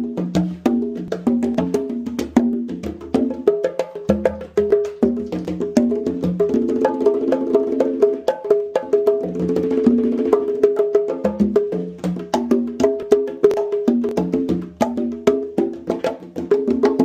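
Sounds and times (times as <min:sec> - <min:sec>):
conga drums fast rhythm: 0:00.0 - 0:17.0.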